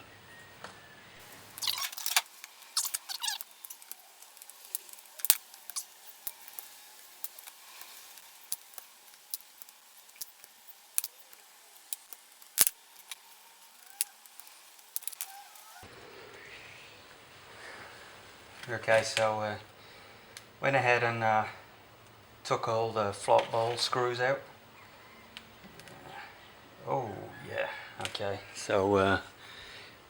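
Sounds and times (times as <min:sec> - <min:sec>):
small metal clicks and ticks: 0:01.6 - 0:15.7.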